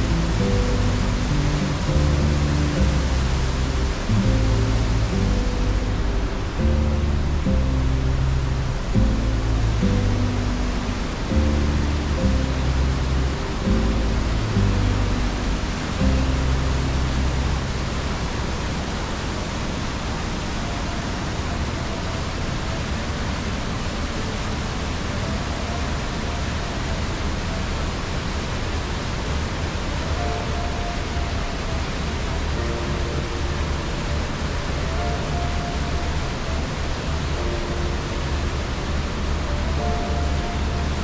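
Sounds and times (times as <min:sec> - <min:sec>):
waterfall rushing: 0:00.0 - 0:41.0.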